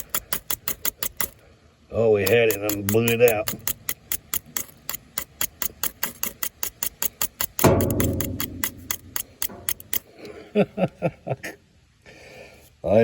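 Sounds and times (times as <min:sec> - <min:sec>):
knife scraping ferro rod: 0:02.2 - 0:10.1.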